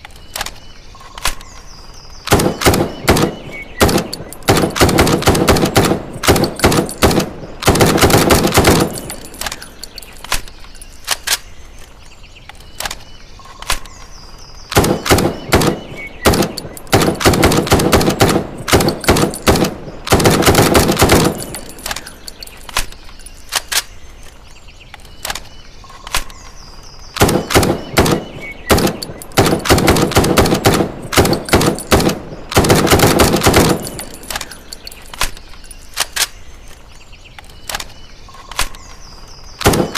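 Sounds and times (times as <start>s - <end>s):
rapid rifle gunshots: 2.3s - 9.3s, 14.7s - 21.8s, 27.2s - 34.3s, 39.6s - 39.9s
single gunshots: 2.3s - 9.6s, 14.7s - 21.7s, 27.2s - 34.1s, 39.6s - 39.9s.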